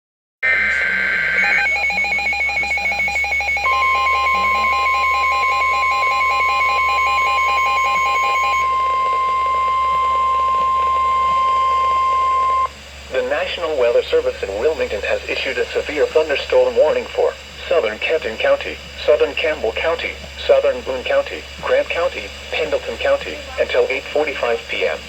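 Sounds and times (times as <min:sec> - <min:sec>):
screeching digital data burst: 0:00.4 - 0:12.7
steady warning alarm tone: 0:00.4 - 0:25.0
fast pulsing electronic beeps: 0:00.6 - 0:12.7.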